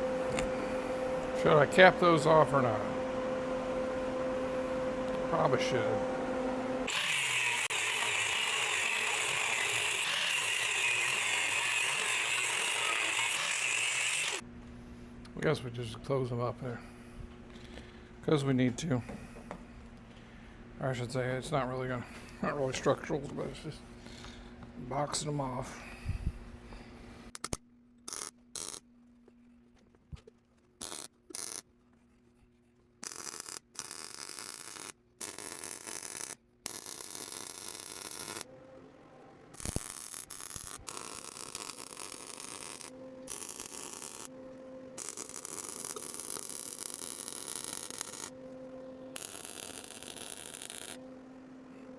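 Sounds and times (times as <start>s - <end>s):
welding arc crackling: 6.8s - 14.4s, 27.4s - 28.8s, 30.8s - 31.6s, 33.0s - 38.5s, 39.5s - 44.3s, 45.0s - 48.3s, 49.2s - 51.0s.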